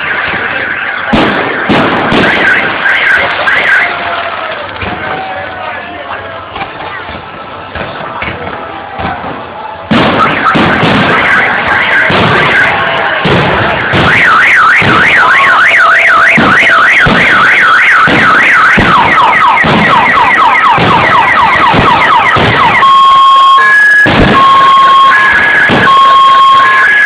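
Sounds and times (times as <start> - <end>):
car alarm: 0.0 - 4.0, 9.9 - 27.0
fireworks booming: 0.0 - 5.7, 6.4 - 27.0.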